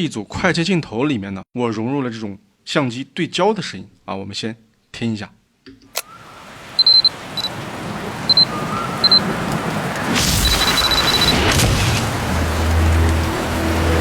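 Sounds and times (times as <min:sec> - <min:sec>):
short high beeps: 0:06.8 - 0:07.5, 0:08.3 - 0:09.2, 0:10.4 - 0:11.4.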